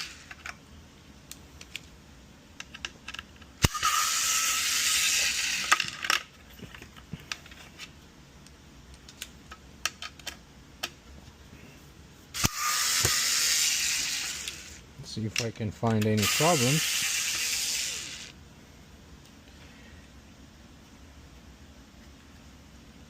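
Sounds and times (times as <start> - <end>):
screws and tools clicking: 2.6 - 6.2, 12.4 - 14.8, 15.4 - 18.3
electric screwdriver whirring: 3.6 - 5.9, 12.4 - 14.8, 16.2 - 18.3.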